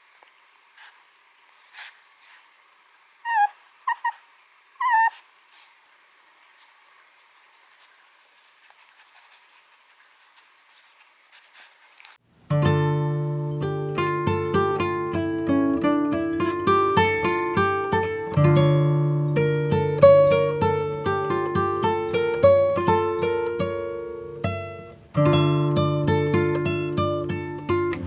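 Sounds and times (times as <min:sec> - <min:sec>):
picked acoustic guitar music: 0:12.5 - 0:28.0.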